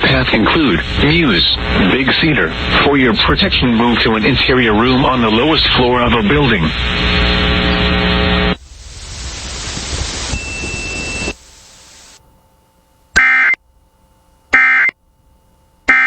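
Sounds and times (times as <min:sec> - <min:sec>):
buzzing data bursts: 0:00.0 - 0:12.2
loud noise hiss: 0:00.0 - 0:12.2.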